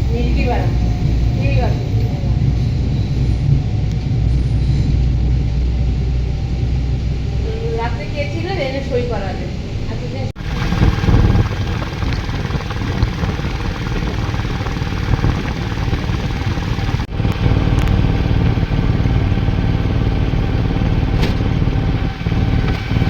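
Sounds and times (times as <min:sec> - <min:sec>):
metro train rumbling: 0:00.0 - 0:23.0.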